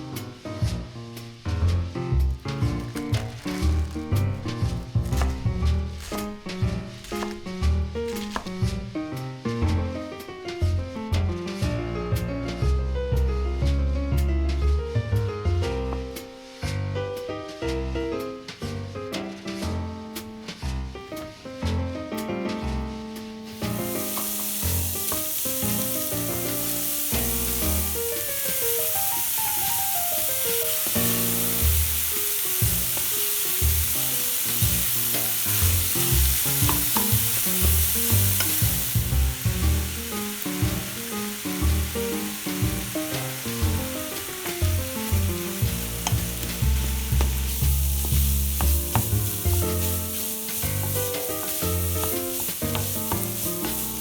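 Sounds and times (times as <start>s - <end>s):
food sizzling in a frying pan: 0.0s - 11.0s, 22.6s - 54.0s.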